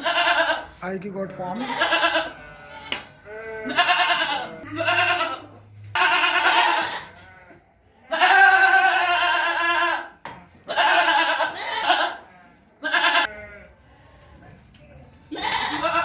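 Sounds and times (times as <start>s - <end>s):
goats bleating: 0.0s - 0.8s, 1.5s - 13.9s, 15.3s - 16.0s.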